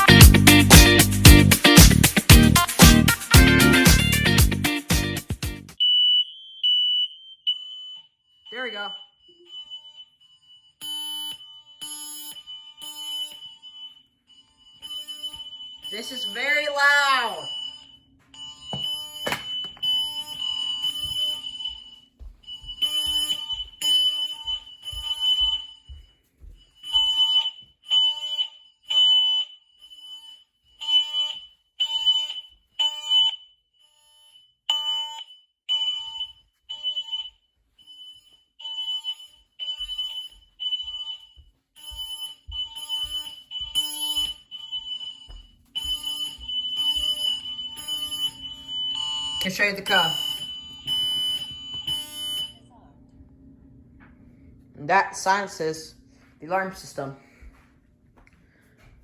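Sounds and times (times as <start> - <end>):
smoke alarm high-pitched beeps: 0.0 - 52.9, 54.8 - 57.4.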